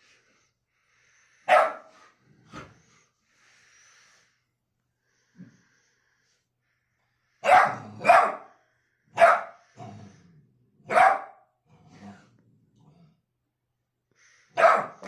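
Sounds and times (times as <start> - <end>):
dog barking: 1.5 - 1.9, 7.4 - 8.6, 9.2 - 9.6, 10.8 - 11.5, 14.5 - 15.0.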